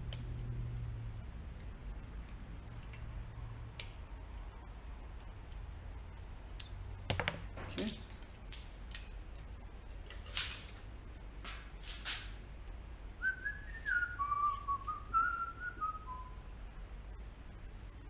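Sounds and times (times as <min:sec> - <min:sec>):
faint high chirp: 0:13.2 - 0:16.4
man whistling a tune: 0:13.2 - 0:16.4.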